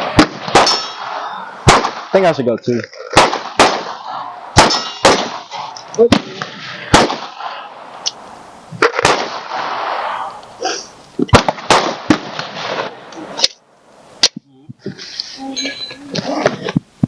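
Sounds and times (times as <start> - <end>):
gunshots: 0.0 - 2.4, 3.1 - 8.1, 8.8 - 10.4, 11.3 - 13.5.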